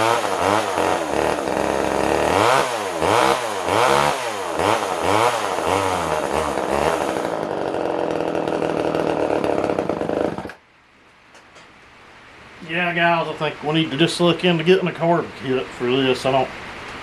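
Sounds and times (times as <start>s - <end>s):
chainsaw engine revving: 0.0s - 10.6s.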